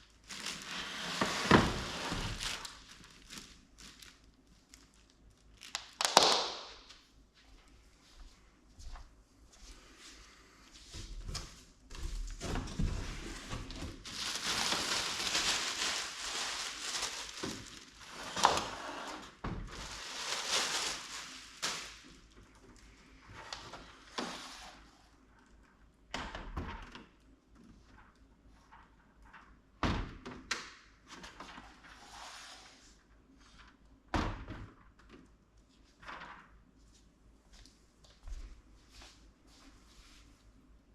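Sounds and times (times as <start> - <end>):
packaging rustling and scraping: 0.0 - 6.2, 12.3 - 22.2.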